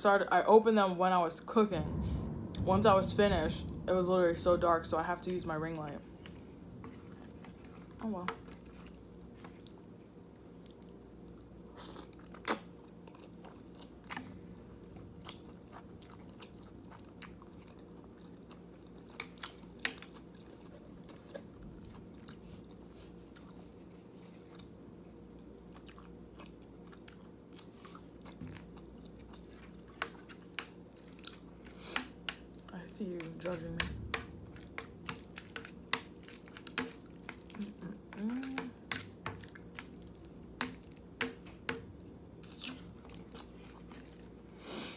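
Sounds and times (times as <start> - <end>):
chewing noodles: 6.3 - 32.7, 34.2 - 41.4, 42.4 - 44.6.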